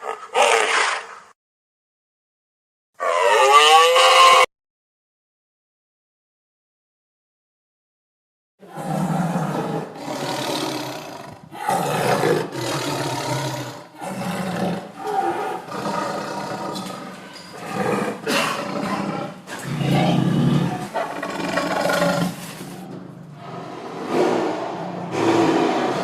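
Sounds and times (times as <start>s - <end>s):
big cat roaring and growling: 3.0s - 4.5s, 8.6s - 26.0s.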